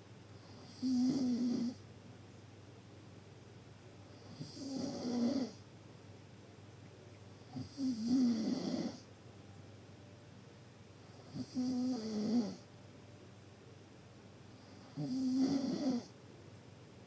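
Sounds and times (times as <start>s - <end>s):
deep snoring: 0.5s - 1.8s, 4.3s - 5.6s, 7.5s - 9.0s, 11.3s - 12.6s, 14.8s - 16.1s.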